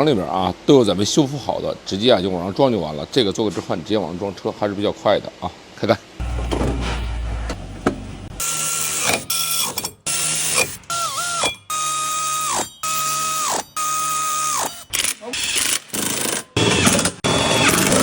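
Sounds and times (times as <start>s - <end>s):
power tool motor whine: 16.6s - 18.0s.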